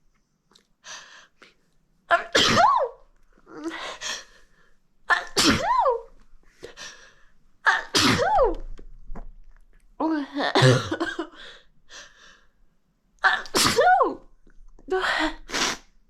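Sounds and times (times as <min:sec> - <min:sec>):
person sneezing: 0:02.2 - 0:02.9, 0:05.1 - 0:06.0, 0:07.7 - 0:08.4, 0:13.3 - 0:14.1, 0:15.0 - 0:15.9.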